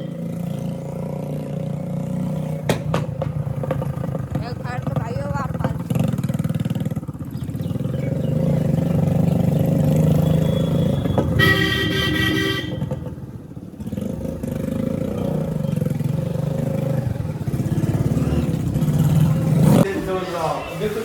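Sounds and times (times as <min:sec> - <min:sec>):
vehicle horn: 0:00.0 - 0:00.4, 0:10.1 - 0:13.1
motorcycle engine running: 0:00.0 - 0:19.8.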